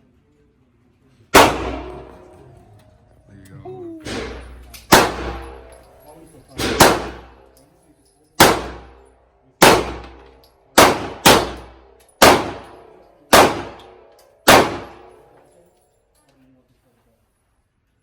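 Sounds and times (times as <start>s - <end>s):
gunshots with ringing echo: 1.4s - 2.8s, 4.0s - 7.6s, 8.4s - 15.4s.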